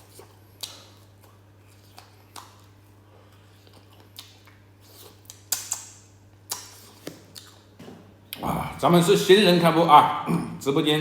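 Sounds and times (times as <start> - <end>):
chewing and biting: 0.0 - 7.7.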